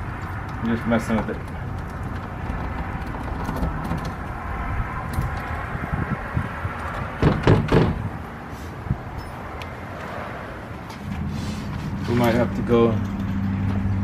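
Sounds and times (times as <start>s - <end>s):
lock rattling and knocking: 0.0s - 4.4s, 5.0s - 5.8s, 6.7s - 8.1s.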